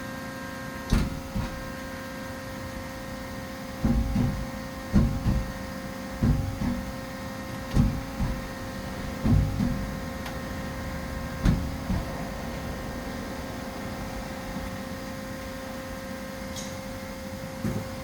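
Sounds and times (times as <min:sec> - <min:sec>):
low mechanical clunks: 0:00.9 - 0:01.8, 0:03.8 - 0:12.8.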